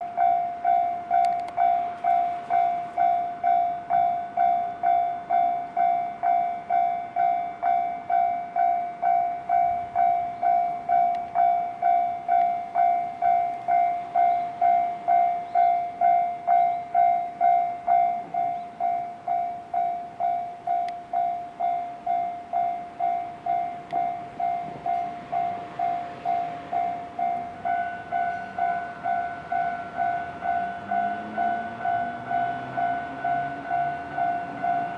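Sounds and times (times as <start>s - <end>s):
level crossing alarm bell: 0.0s - 34.9s.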